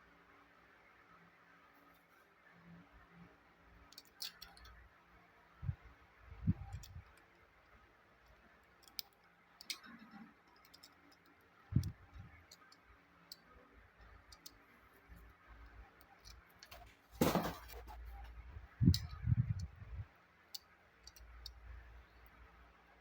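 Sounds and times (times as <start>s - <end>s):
packaging rustling: 16.7s - 18.1s.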